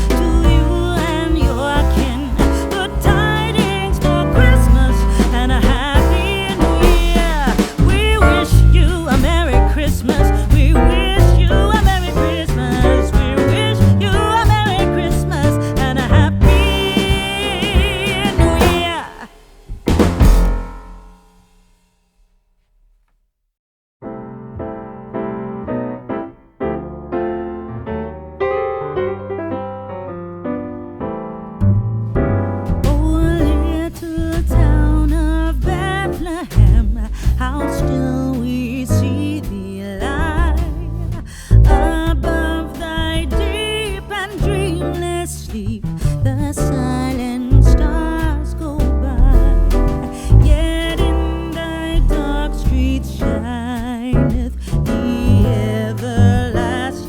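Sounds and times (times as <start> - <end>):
piano playing chords: 0.0 - 19.2, 19.9 - 21.4, 24.0 - 33.8, 46.7 - 54.3
bass accompaniment: 0.0 - 21.9, 24.0 - 57.0.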